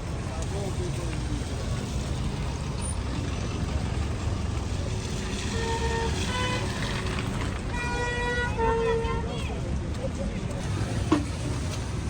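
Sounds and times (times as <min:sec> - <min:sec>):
passing vehicle engine rumble: 0:00.0 - 0:12.0
heavy rain on road: 0:00.4 - 0:08.0.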